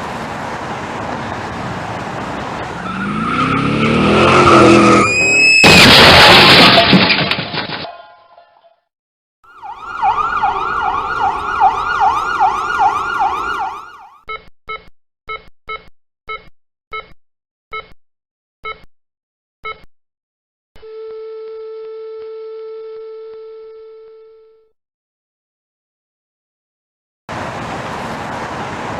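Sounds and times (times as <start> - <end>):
emergency siren fast wail: 2.7 - 5.6, 9.5 - 14.2.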